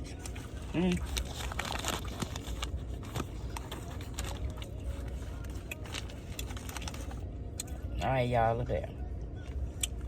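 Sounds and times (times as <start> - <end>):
food wrapper crackling: 0.2 - 7.2.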